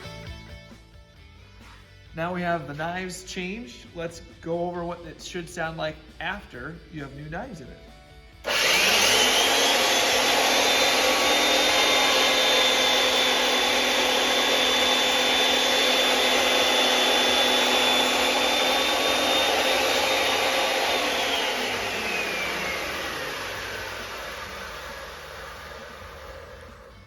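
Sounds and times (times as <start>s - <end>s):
planer motor whine: 8.4s - 27.0s.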